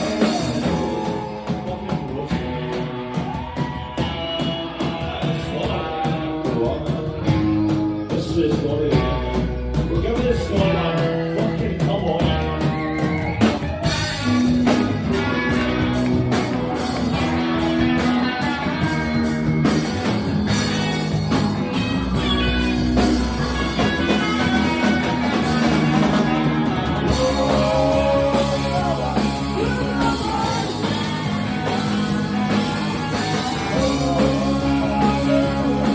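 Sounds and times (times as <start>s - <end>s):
person singing: 0.0s - 13.0s, 22.1s - 35.9s
rock band playing live: 0.0s - 35.9s.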